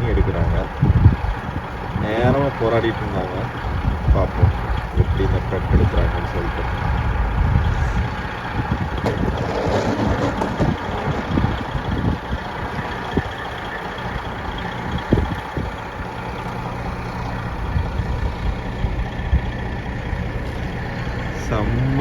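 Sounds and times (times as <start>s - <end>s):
wind on microphone: 0.0s - 2.1s, 3.7s - 13.6s, 14.3s - 15.9s
truck engine running: 0.0s - 22.0s
short knocks: 8.9s - 13.3s.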